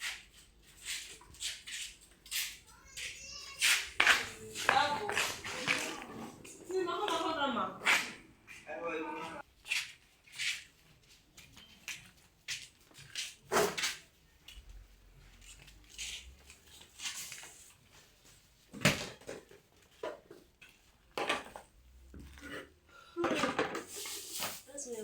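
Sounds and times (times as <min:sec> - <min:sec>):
knocks and clatters of handling: 0:18.7 - 0:24.7.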